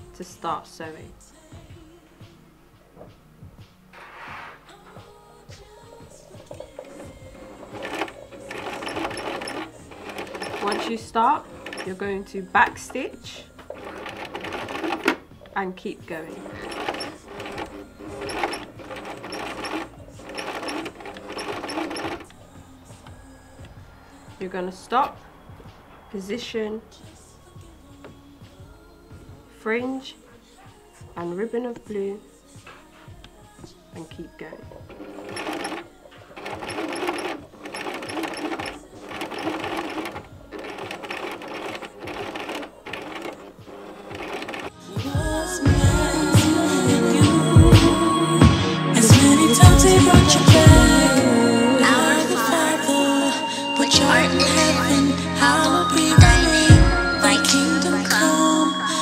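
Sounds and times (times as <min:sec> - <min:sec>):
music: 0:00.0 - 0:59.0
sewing machine stitching: 0:06.4 - 0:22.4, 0:34.8 - 0:44.8.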